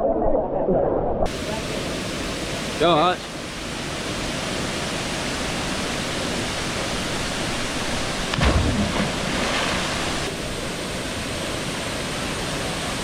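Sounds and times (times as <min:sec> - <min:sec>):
waterfall rushing: 0:01.3 - 0:13.0
person splashing into water: 0:08.3 - 0:10.3.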